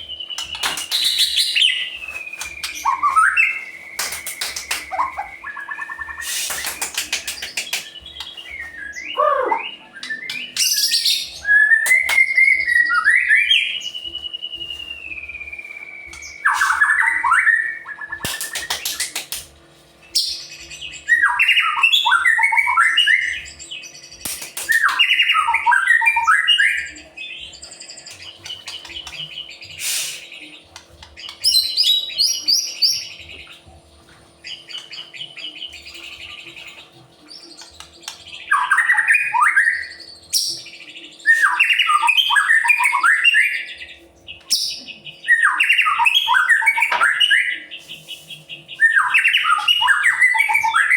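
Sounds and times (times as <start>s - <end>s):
bird whistled song: 0.0s - 19.4s, 20.1s - 33.6s, 34.4s - 50.9s
sharp clicks: 24.2s - 24.9s.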